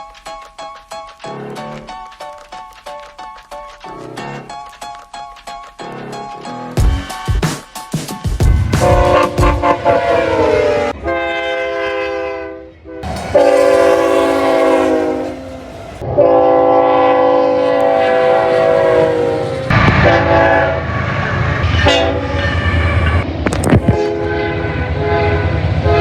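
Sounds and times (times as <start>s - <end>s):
train rumble and wheel clatter: 0.0s - 26.0s
locomotive air horn blasts: 8.6s - 21.0s, 21.6s - 23.2s, 23.9s - 26.0s.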